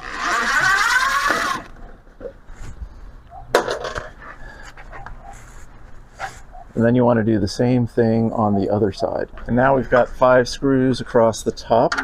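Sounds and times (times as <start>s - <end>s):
power screwdriver whirring: 0.0s - 1.7s.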